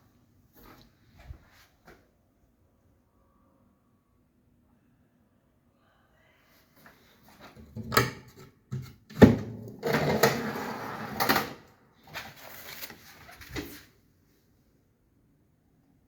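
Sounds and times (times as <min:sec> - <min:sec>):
drawers sliding and scraping: 0:09.2 - 0:13.8.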